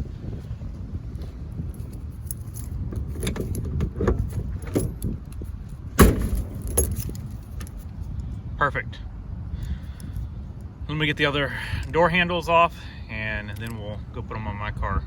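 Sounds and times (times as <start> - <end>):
keys jangling and clicking: 1.7 - 7.8
car trunk lid thumping shut: 6.0 - 7.0.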